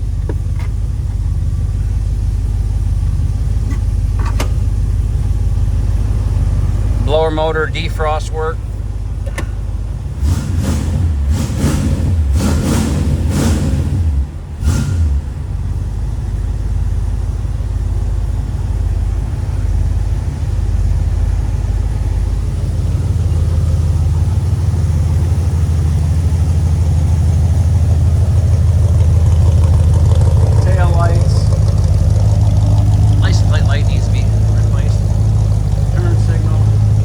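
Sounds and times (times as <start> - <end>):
car engine idling: 0.0 - 37.0
engine knocks: 0.0 - 37.0.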